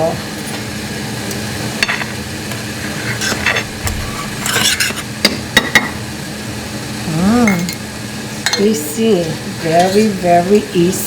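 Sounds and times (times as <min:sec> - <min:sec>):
steady low hum: 0:01.0 - 0:11.0
metal utensils clinking: 0:03.0 - 0:05.1.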